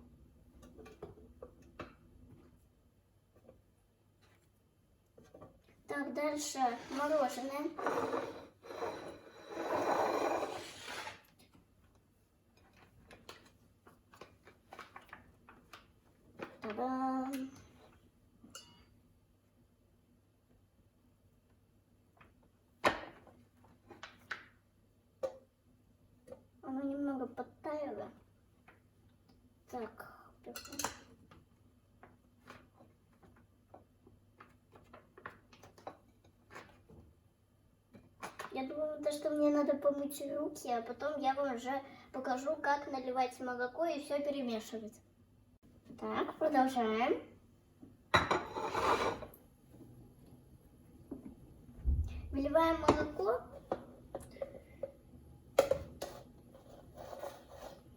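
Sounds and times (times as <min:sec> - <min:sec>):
rustling and scraping: 0:06.5 - 0:11.6, 0:56.0 - 0:57.9.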